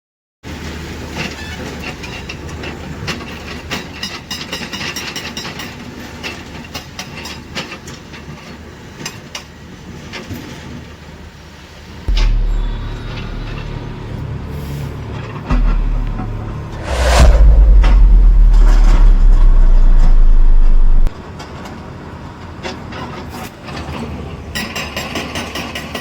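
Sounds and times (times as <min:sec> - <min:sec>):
loud low rumble: 0:12.1 - 0:21.2.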